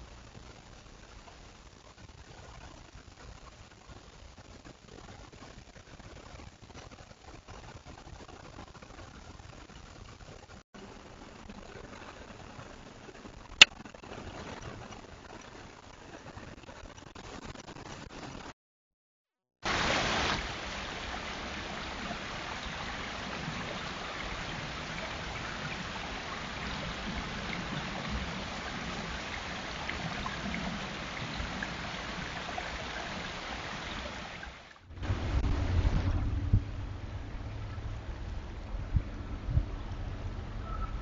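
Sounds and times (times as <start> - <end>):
running water rushing: 19.6 - 41.0
low rumble: 34.8 - 41.0.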